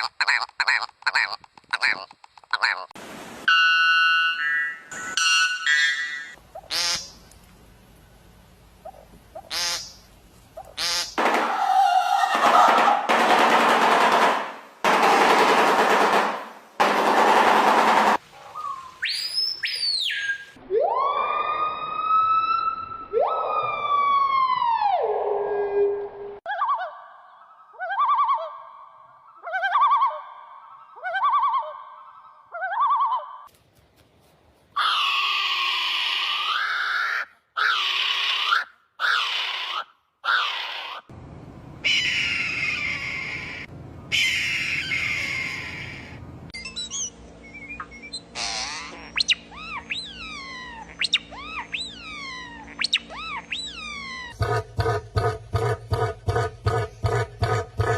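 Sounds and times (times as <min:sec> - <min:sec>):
bird whistling like a siren: 0:18.6 - 0:24.3, 0:46.6 - 0:48.4, 0:49.1 - 0:54.4
harsh bird calls: 0:41.8 - 0:54.4.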